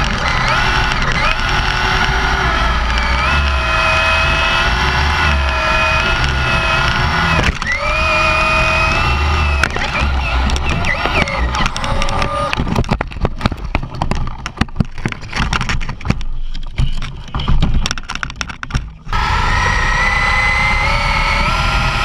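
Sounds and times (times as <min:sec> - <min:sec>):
electric motor whining: 0:00.0 - 0:12.7, 0:19.1 - 0:22.0.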